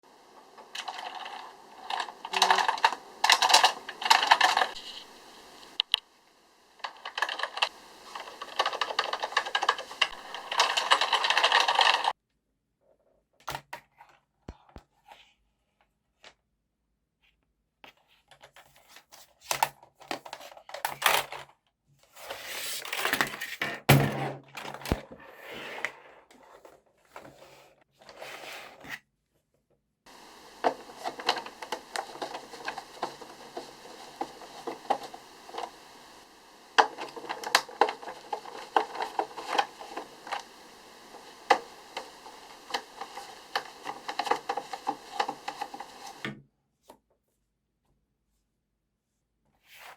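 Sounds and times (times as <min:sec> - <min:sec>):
faint steady hum: 0:00.1 - 0:12.1, 0:30.1 - 0:46.2
plastic parts knocking and scraping: 0:00.5 - 0:05.1, 0:06.8 - 0:12.1, 0:22.2 - 0:29.0, 0:30.1 - 0:46.4.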